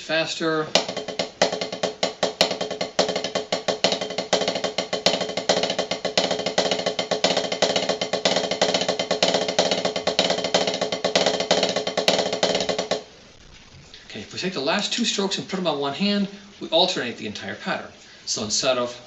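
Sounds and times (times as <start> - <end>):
snare drum rolls: 0.6 - 13.1.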